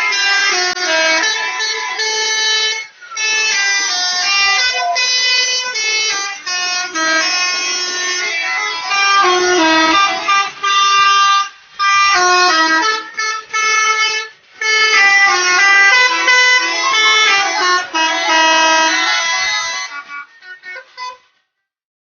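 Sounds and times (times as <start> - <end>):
multi-tone bus horns playing tune: 0.0 - 21.4.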